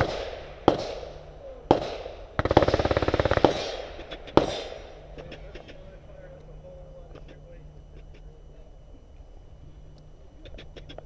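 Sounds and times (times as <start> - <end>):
rapid gunfire burst: 0.0 - 1.1, 1.7 - 5.0
gunshots: 0.0 - 5.6.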